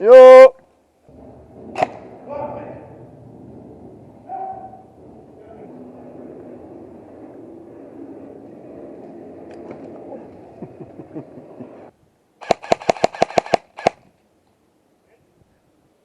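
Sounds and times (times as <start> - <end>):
muffled rumbling noise: 1.0 - 11.9
airsoft gun shots: 12.4 - 14.0.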